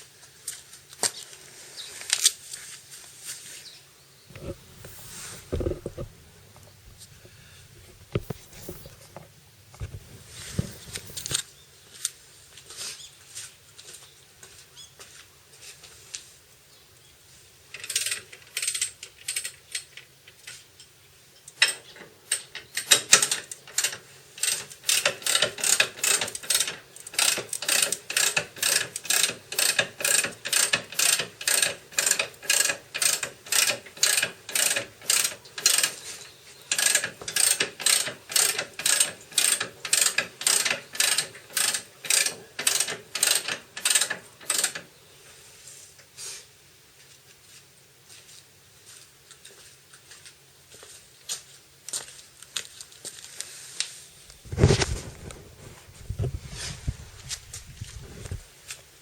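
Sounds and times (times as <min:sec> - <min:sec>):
ratchet wrench clicking: 0:17.8 - 0:19.9, 0:21.6 - 0:36.0, 0:36.7 - 0:44.9.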